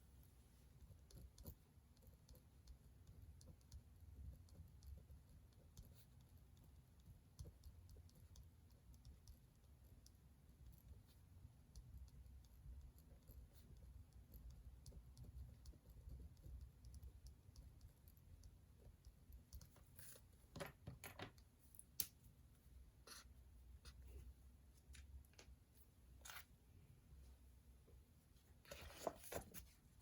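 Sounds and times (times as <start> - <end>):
small desk clicks and taps: 14.5 - 22.2
paper rustles: 28.7 - 29.8.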